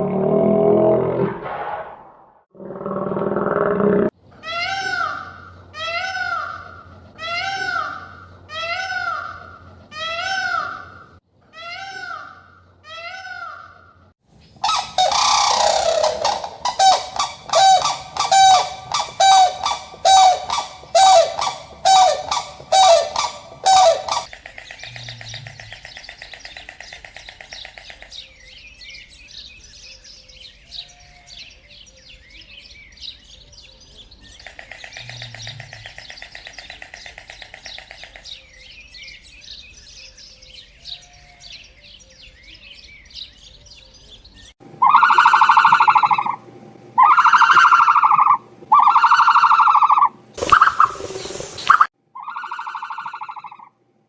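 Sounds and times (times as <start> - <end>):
pitched animal cries: 4.4 - 10.9, 11.5 - 13.8, 14.6 - 24.3, 44.8 - 46.4, 47.0 - 50.8
birds chirping and buzzing: 14.4 - 46.4
loud honking calls: 14.6 - 24.3.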